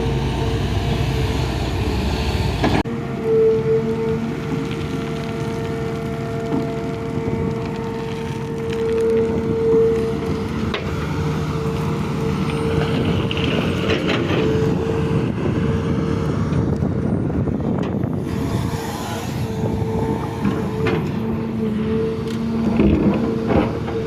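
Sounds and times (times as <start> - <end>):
constant whine: 0.0 - 14.5
excavator engine running: 0.0 - 24.0.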